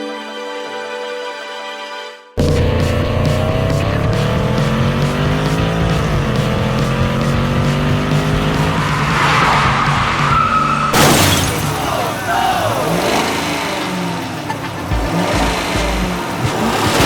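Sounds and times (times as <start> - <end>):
steady beat: 2.4 - 10.4, 12.9 - 16.8
cartoon car engine revving: 2.4 - 17.0
tyre squeal: 8.6 - 11.0.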